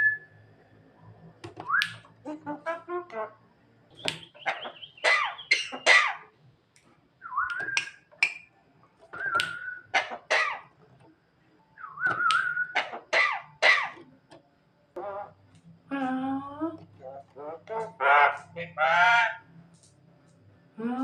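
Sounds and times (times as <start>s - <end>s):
myna bird whistling and clicking: 1.6s - 2.2s, 4.0s - 6.0s, 7.2s - 8.5s, 9.1s - 10.1s, 11.8s - 14.0s.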